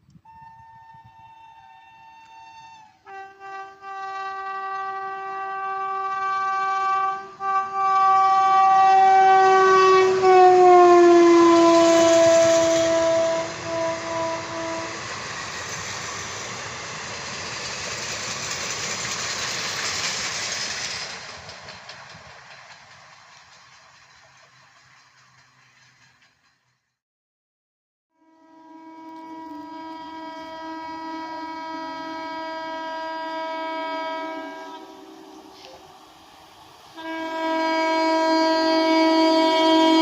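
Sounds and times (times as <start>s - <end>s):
locomotive horn: 0.1s - 16.7s, 28.1s - 40.0s
train wheels rushing over track: 4.4s - 26.9s, 29.3s - 40.0s.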